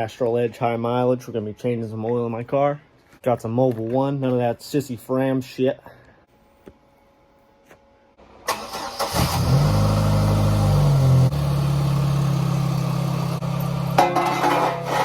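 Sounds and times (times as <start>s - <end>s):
car engine starting and idling: 8.2s - 14.0s.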